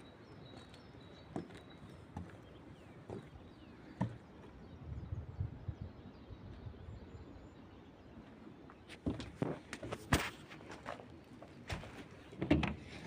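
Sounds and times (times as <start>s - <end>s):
small birds chirping: 0.0s - 9.7s.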